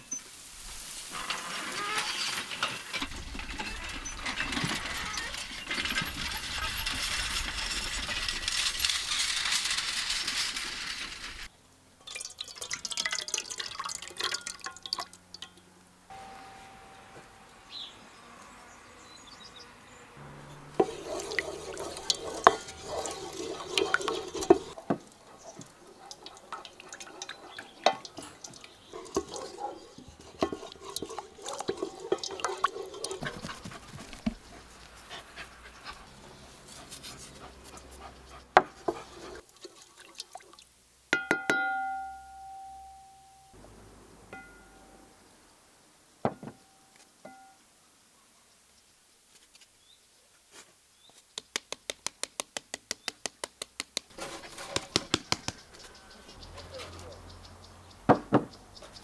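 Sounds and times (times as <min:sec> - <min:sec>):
dishes and utensils clinking: 0:01.1 - 0:17.4, 0:20.4 - 0:35.2
water running: 0:12.0 - 0:17.7, 0:20.2 - 0:40.4.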